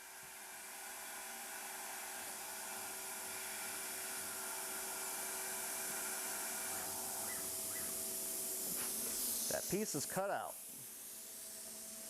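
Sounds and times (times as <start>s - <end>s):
rushing air hiss: 5.0s - 12.0s
constant hum: 5.9s - 11.6s.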